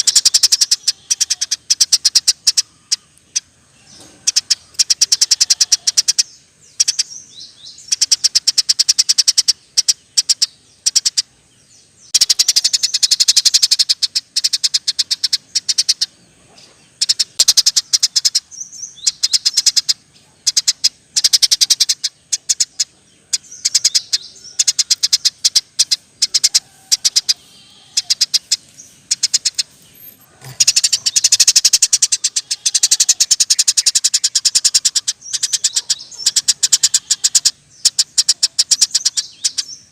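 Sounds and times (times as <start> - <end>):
sparrow chirping: 0.0 - 39.9.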